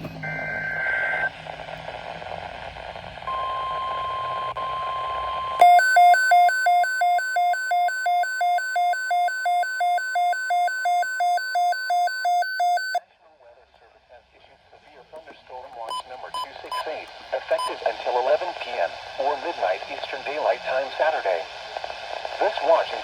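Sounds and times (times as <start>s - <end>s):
faint radio hiss: 0.4s - 5.6s, 12.8s - 23.0s
steady warning alarm tone: 5.6s - 13.0s
warbling electronic alarm: 5.6s - 13.0s.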